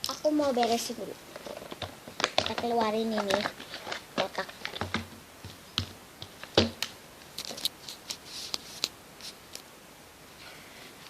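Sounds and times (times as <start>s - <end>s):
rustling of box: 0.8s - 5.6s.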